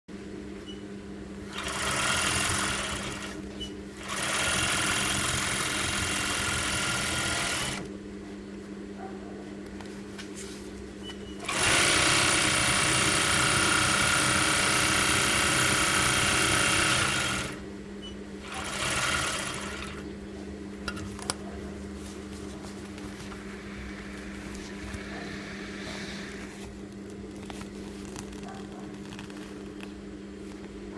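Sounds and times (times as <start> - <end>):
sewing machine stitching: 1.5 - 3.4, 4.0 - 7.9, 11.4 - 17.6, 18.4 - 20.0
steady low hum: 19.4 - 30.9.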